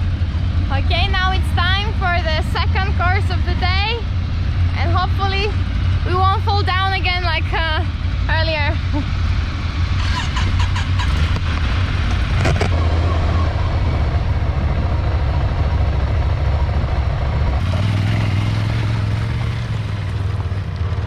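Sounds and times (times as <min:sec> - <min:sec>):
motorcycle engine running: 0:00.0 - 0:21.0.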